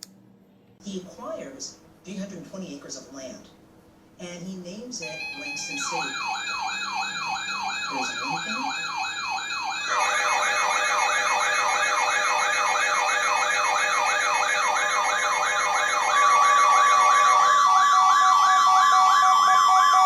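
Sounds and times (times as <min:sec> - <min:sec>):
steady high alarm tone: 0:05.0 - 0:20.0
warbling siren alarm: 0:05.0 - 0:20.0.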